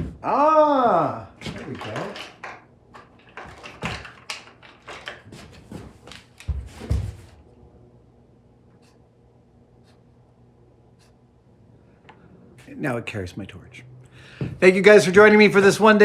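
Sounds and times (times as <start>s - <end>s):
faint steady hum: 0.0s - 16.0s
hard objects clicking and clattering: 1.4s - 6.4s.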